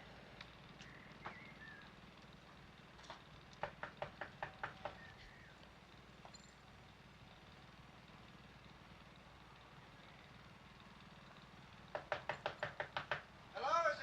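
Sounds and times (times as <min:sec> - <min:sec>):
low engine-like rumble: 0:00.0 - 0:11.9
sharp knocks: 0:11.9 - 0:13.3.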